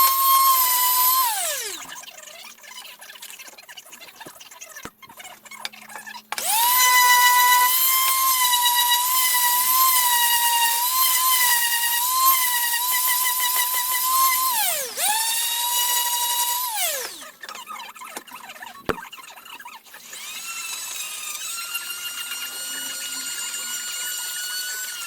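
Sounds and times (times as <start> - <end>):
electric power tool whine: 0.0 - 2.0, 6.3 - 17.4, 19.9 - 25.0.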